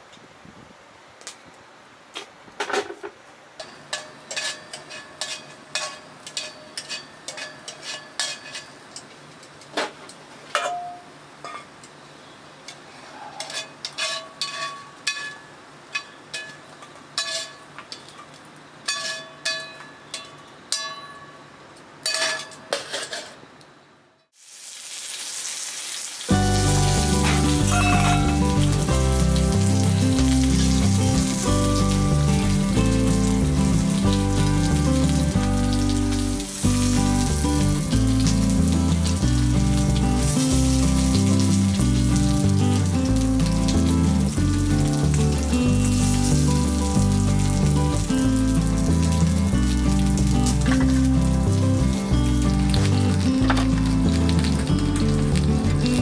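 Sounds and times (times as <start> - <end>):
metal clinking on pan: 3.6 - 11.9, 12.7 - 23.4, 27.2 - 28.5
food frying in a pan: 3.6 - 23.4, 24.3 - 56.0
loud music: 26.3 - 35.7.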